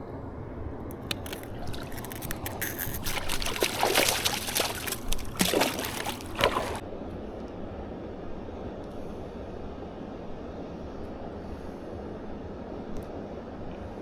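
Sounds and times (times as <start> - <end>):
water splashing and sloshing: 0.9 - 6.8.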